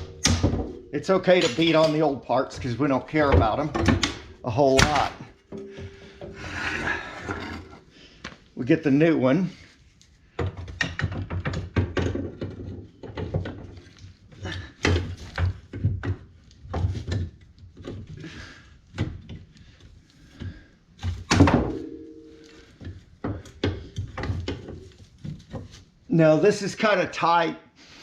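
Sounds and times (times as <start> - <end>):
metallic clang: 0.0 - 7.7, 21.4 - 22.8
metal knocks and clunks: 0.0 - 7.9, 10.3 - 18.2, 20.4 - 25.7.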